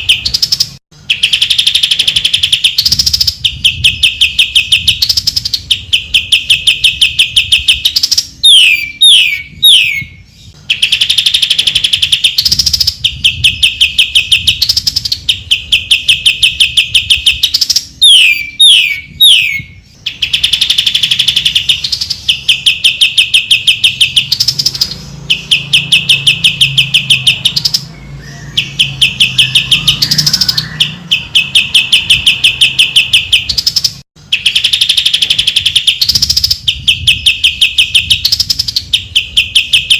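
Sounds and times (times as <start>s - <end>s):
bird trilling song: 0.0s - 39.9s
downward-sliding whistles: 8.4s - 10.2s.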